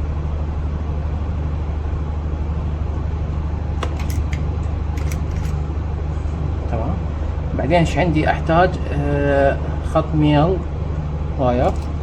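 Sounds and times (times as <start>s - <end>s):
steady low hum: 2.2s - 12.0s
light clicks of tools: 11.6s - 12.0s.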